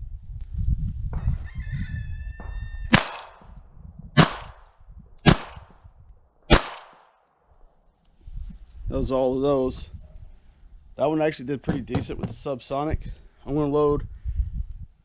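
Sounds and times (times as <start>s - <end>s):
rooster crowing: 1.2s - 2.9s
pistol shots: 2.9s - 3.5s, 4.2s - 4.6s, 5.2s - 5.7s, 6.5s - 7.2s.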